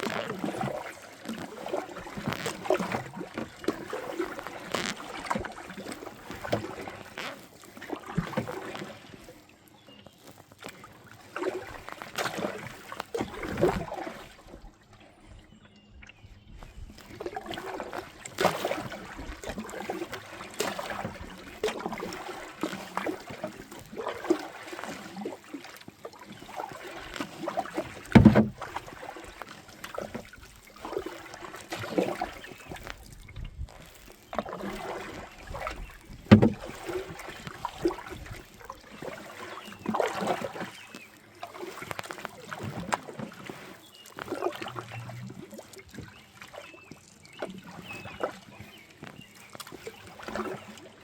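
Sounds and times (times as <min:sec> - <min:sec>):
kayak paddle splashing water: 0:00.0 - 0:51.0
sharp knocks: 0:28.2 - 0:28.6, 0:36.3 - 0:36.6.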